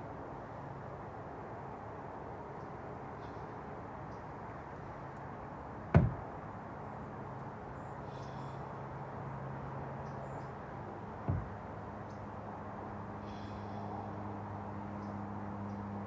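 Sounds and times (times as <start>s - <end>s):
hand weight thudding on floor: 6.0s - 6.2s, 11.3s - 11.6s.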